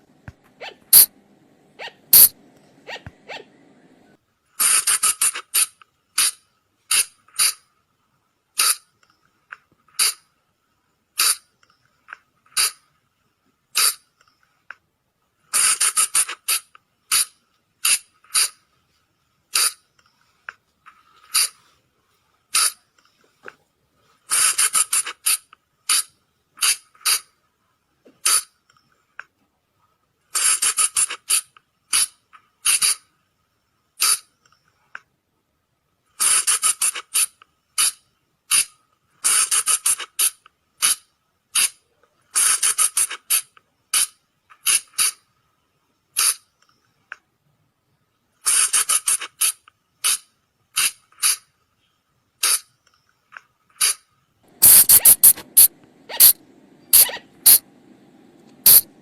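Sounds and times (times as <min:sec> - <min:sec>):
high squeaky animal calls: 0:00.6 - 0:01.1, 0:01.8 - 0:02.3, 0:54.6 - 0:57.6, 0:58.7 - 0:58.9.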